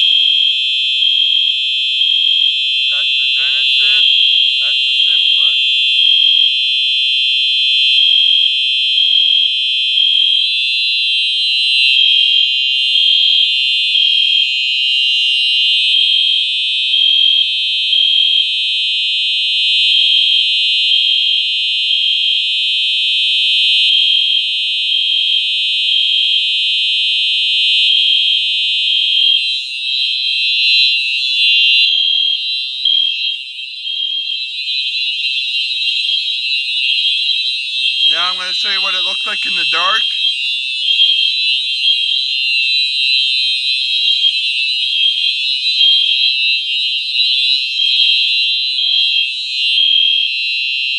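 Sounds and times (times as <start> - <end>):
fire alarm horns sounding: 0.0 - 12.2, 28.5 - 50.3.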